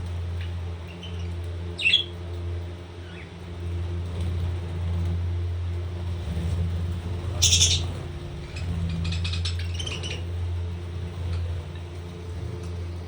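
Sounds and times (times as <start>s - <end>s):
steady low hum: 0.0s - 13.0s
parrot chirps and squawks: 0.9s - 2.1s, 7.4s - 10.3s.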